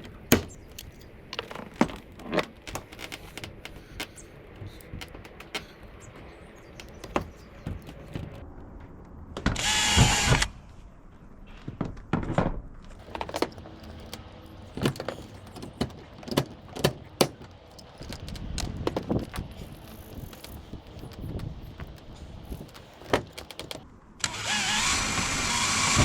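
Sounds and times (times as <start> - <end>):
tools tapping on metal roof: 4.9 - 8.4, 13.0 - 19.4
loud rasping burst: 9.6 - 10.6, 24.2 - 26.0.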